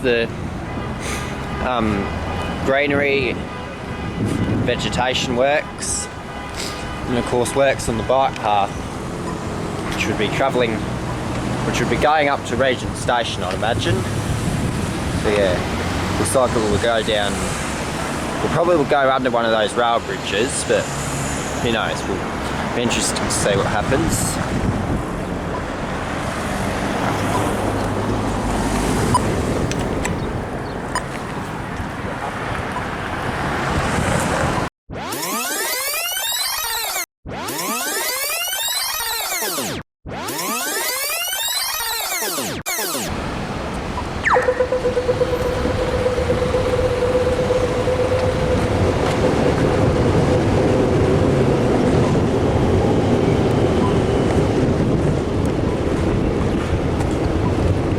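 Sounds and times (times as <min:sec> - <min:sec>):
road traffic noise: 0:00.0 - 0:34.7, 0:42.7 - 0:57.9
passing vehicle engine hum: 0:08.7 - 0:34.7, 0:43.1 - 0:57.9
electric train wheels rumbling: 0:43.1 - 0:57.9
train whine: 0:43.2 - 0:54.7.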